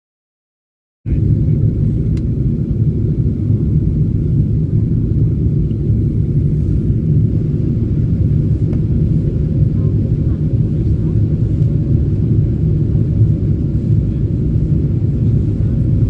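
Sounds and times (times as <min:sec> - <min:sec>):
airplane cabin rumble: 0:01.1 - 0:16.0.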